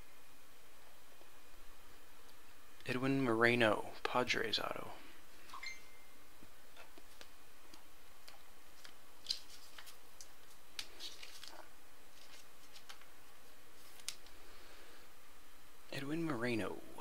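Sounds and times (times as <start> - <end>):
steady low hiss: 0.0 - 17.0
trading cards handled: 7.0 - 13.2, 13.8 - 14.4.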